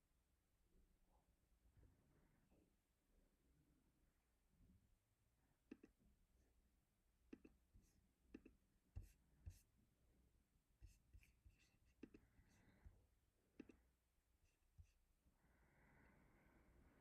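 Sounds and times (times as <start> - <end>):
keyboard and mouse clicks: 5.7 - 6.0, 7.3 - 7.6, 13.6 - 13.8.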